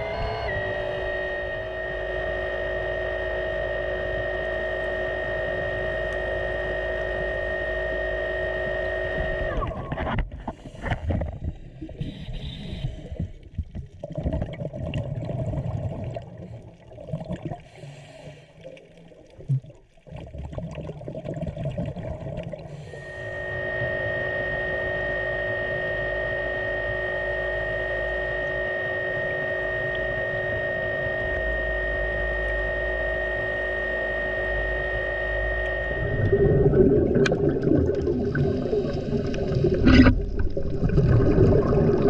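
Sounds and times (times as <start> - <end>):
boat engine drone: 0.0 - 10.8, 22.7 - 42.0
water splashing and gurgling: 13.1 - 22.8, 35.9 - 42.0.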